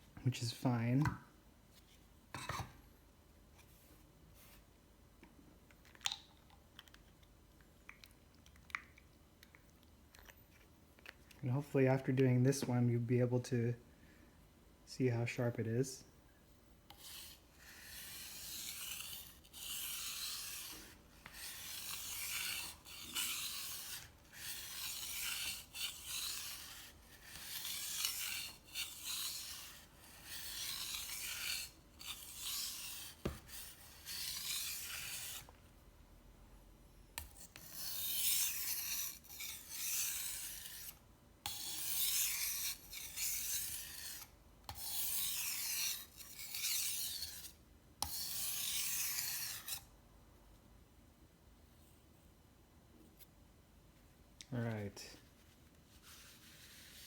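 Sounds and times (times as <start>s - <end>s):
knife scraping on whetstone: 16.9s - 35.6s, 37.2s - 49.9s.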